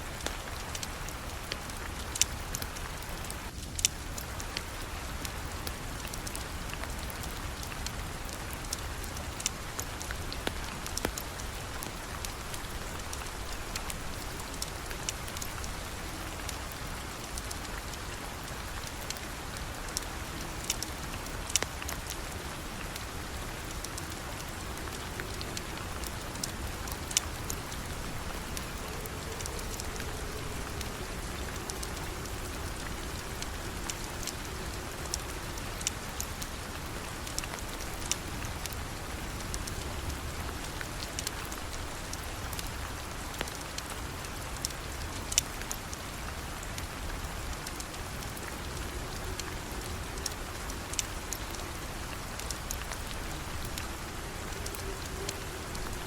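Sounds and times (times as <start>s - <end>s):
steady rain falling: 0.0s - 56.0s
sharp ticks and pops: 0.2s - 4.7s, 20.7s - 22.1s, 45.3s - 45.8s, 50.1s - 51.6s.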